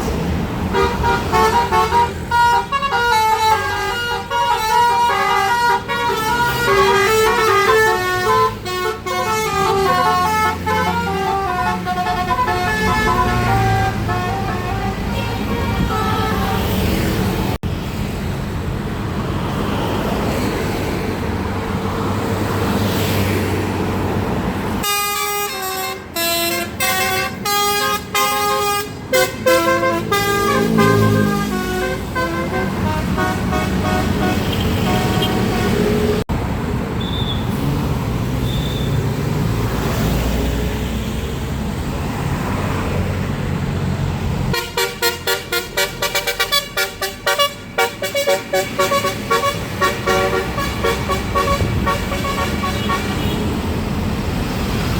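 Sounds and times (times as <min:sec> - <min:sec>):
bus engines: 0:00.0 - 0:54.9
traffic noise: 0:00.0 - 0:54.9
multi-tone bus air horn tune: 0:00.7 - 0:17.3, 0:24.8 - 0:36.2, 0:44.5 - 0:53.6.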